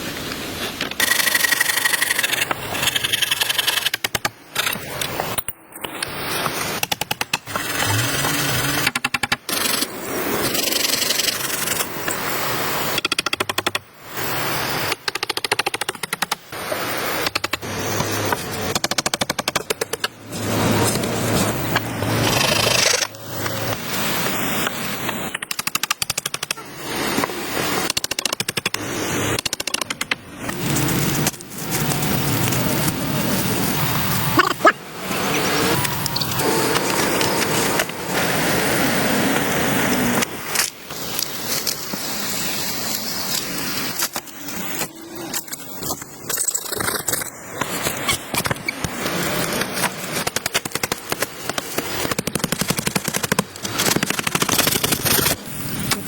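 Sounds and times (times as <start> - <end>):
harsh rasping noise: 0.4 - 13.0
tool scraping wood: 0.8 - 12.2
power tool rapid knocking: 1.0 - 4.2, 50.2 - 55.4.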